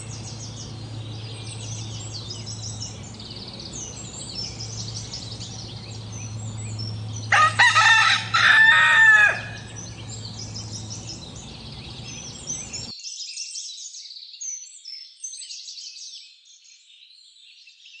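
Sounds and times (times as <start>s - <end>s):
small birds chirping: 0.0s - 18.0s
rooster crowing: 5.2s - 11.7s.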